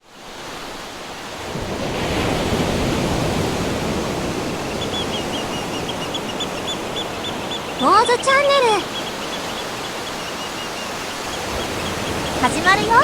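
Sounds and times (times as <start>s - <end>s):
sea water: 0.0s - 13.0s
rushing wind: 0.1s - 13.0s
faint high chirps: 4.7s - 13.0s.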